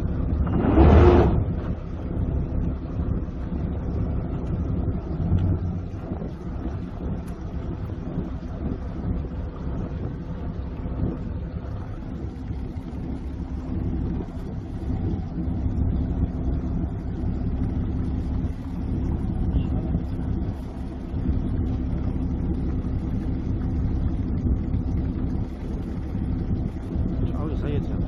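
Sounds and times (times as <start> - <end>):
boat engine rumbling: 0.0 - 28.0.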